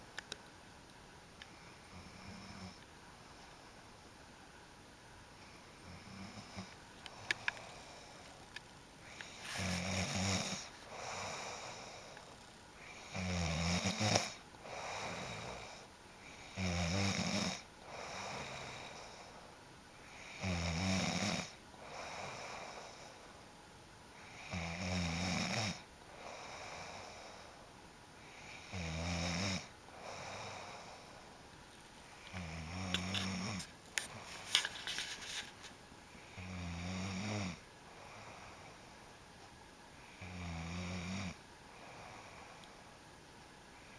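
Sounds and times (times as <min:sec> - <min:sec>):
quiet breathing: 0:01.4 - 0:04.0, 0:05.3 - 0:20.5, 0:21.4 - 0:24.7, 0:25.7 - 0:43.9
person snoring: 0:09.1 - 0:15.8.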